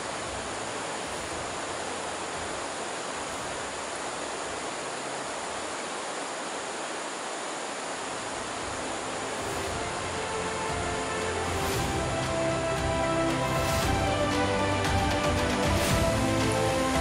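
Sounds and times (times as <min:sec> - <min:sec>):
river rushing over rapids: 0:00.0 - 0:17.0
music: 0:08.7 - 0:17.0.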